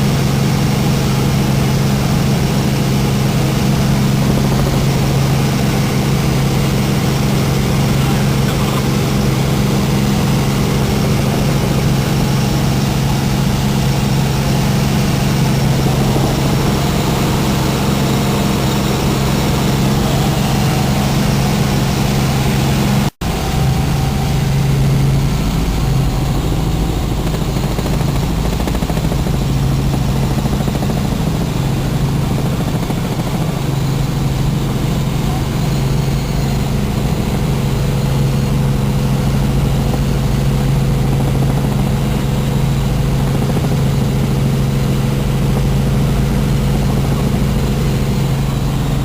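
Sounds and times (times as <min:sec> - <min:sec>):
helicopter engine and rotor drone: 0:00.0 - 0:49.0.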